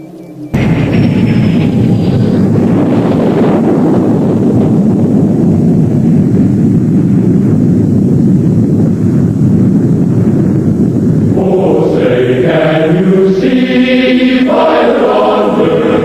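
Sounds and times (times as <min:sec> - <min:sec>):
loud low rumble: 0:00.0 - 0:16.0.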